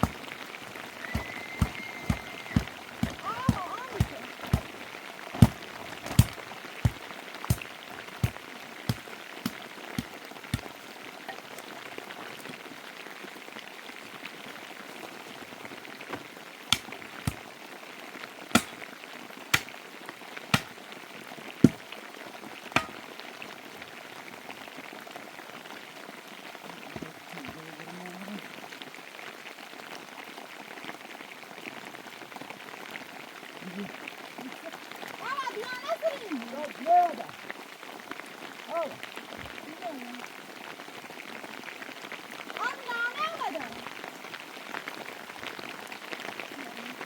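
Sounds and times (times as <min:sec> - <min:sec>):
sharp knocks: 0:00.0 - 0:00.2, 0:01.1 - 0:04.7, 0:05.4 - 0:10.7, 0:22.8 - 0:23.0
steady rain: 0:00.0 - 0:47.0.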